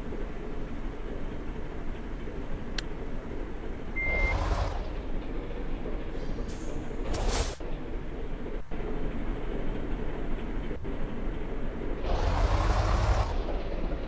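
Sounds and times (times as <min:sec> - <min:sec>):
heavy traffic engine rumble: 0:00.0 - 0:14.0
air brake hiss: 0:06.2 - 0:07.7.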